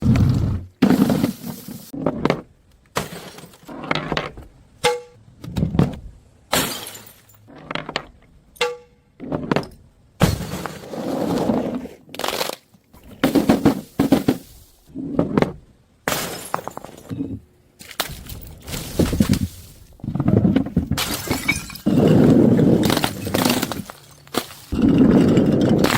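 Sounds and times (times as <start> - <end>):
glass bottles breaking: 6.5 - 7.5, 16.1 - 17.2, 21.0 - 25.9.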